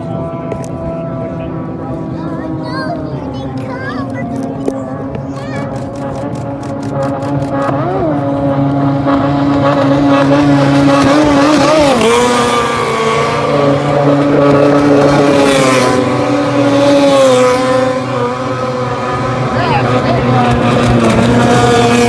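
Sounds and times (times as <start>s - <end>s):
motorboat engines at high revs: 0.0s - 22.0s.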